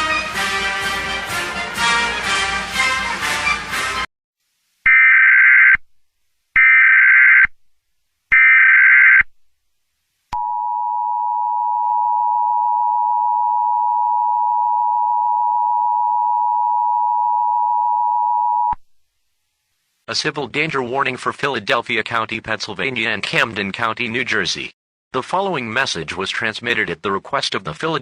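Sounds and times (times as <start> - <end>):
music: 0.0 - 4.1.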